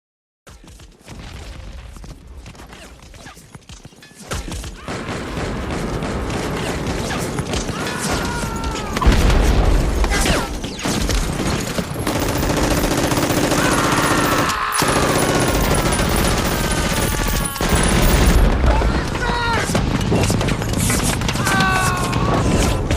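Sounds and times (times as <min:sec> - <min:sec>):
rapid gunfire: 0:04.5 - 0:22.9
explosions: 0:04.8 - 0:12.8, 0:13.4 - 0:22.9.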